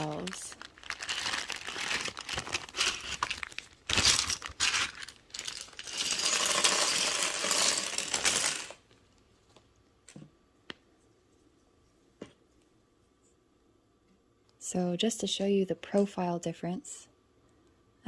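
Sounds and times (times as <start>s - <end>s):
plastic packaging crinkling: 0.0s - 8.9s.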